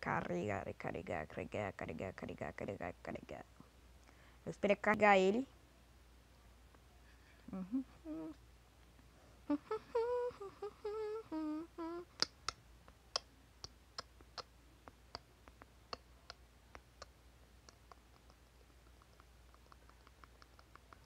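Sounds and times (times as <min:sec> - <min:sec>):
person humming: 0:07.4 - 0:08.4, 0:09.4 - 0:12.4
light sharp clicks: 0:12.2 - 0:21.0.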